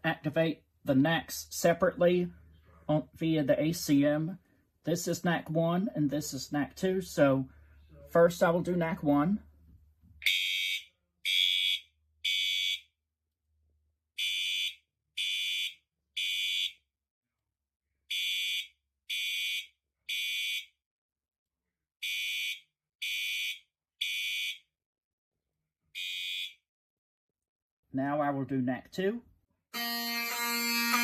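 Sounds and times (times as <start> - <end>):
buzzy fire alarm horn blasts: 10.2 - 12.9, 14.2 - 16.8, 18.1 - 20.7, 22.0 - 24.7, 26.0 - 26.6, 29.7 - 31.0.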